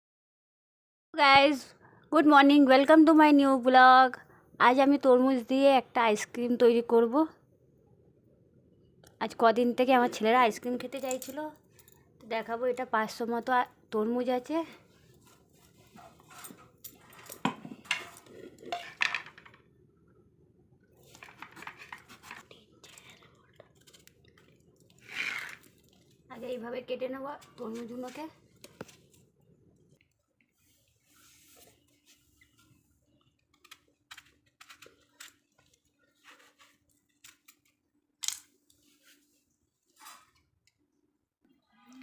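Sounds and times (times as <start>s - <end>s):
dishes and utensils clattering: 16.0s - 19.5s.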